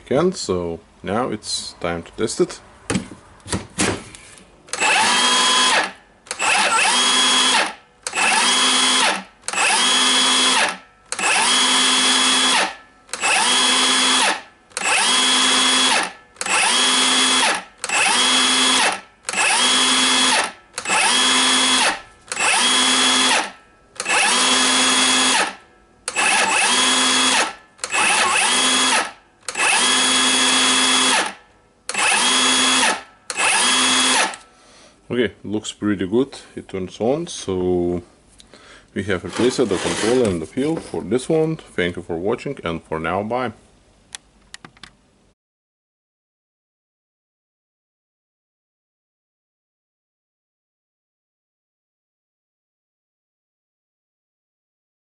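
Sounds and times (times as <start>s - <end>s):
circular saw whining: 4.7s - 34.4s.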